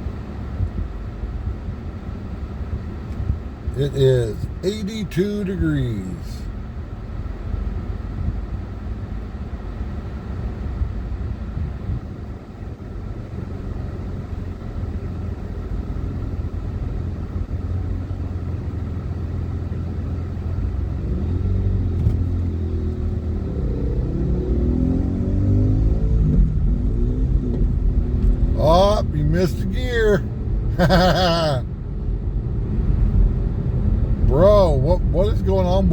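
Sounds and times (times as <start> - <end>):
car cabin rumble: 0.0 - 35.9
motorcycle accelerating: 20.8 - 29.2.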